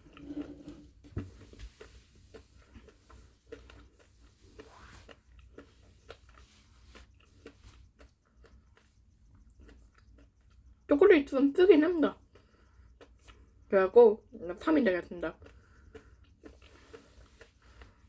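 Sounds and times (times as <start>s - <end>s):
chewing chocolate bar: 1.2s - 10.9s, 12.1s - 13.7s, 15.0s - 18.0s.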